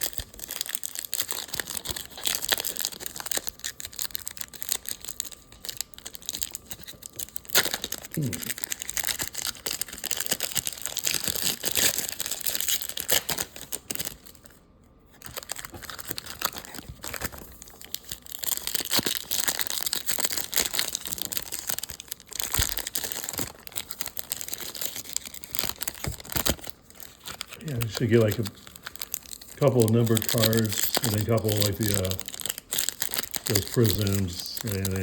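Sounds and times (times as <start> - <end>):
card pack wrappers crinkling: 0.0 - 35.0.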